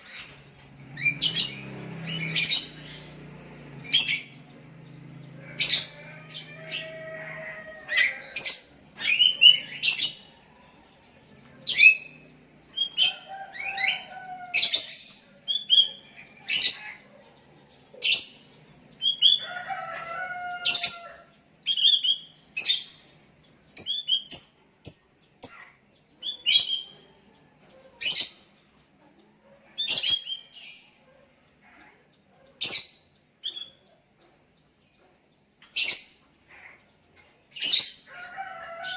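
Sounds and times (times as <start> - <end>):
bulbuls calling: 0.0 - 24.3.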